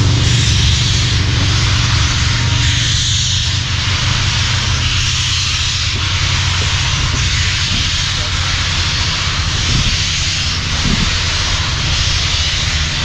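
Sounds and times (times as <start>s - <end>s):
loud steam hiss: 0.0s - 13.0s
train low rumble: 0.0s - 13.0s.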